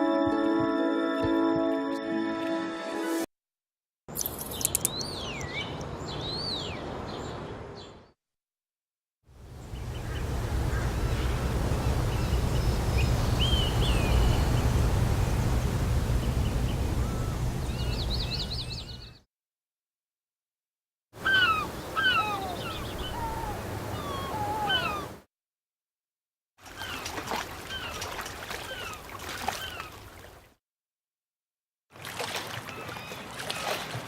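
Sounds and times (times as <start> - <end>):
low rumbling noise: 9.5 - 18.9
birds chirping and calling: 16.5 - 19.2, 21.2 - 25.1.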